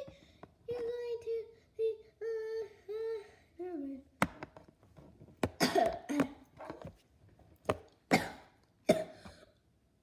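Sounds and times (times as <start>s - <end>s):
sharp coughing: 5.6s - 6.4s, 8.1s - 9.6s.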